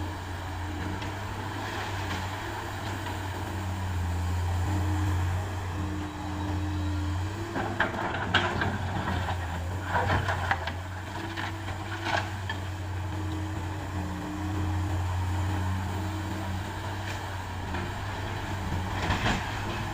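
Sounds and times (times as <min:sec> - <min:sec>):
diesel engine running: 0:00.0 - 0:19.9
excavator bucket clanks and scrapes: 0:07.4 - 0:12.7, 0:18.6 - 0:19.9.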